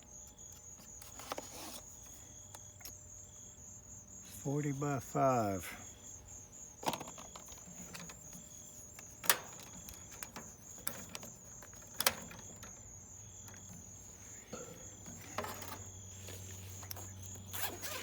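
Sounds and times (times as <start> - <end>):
crickets chirping: 0.0 - 18.0
sharp clicks and knocks: 6.8 - 12.8.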